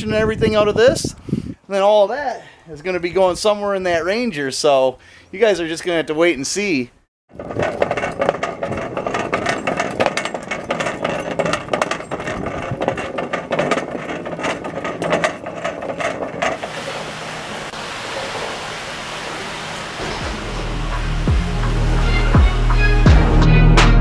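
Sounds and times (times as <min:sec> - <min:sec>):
metal tools clicking and clattering: 0:07.4 - 0:17.0
steady hiss: 0:16.6 - 0:21.3.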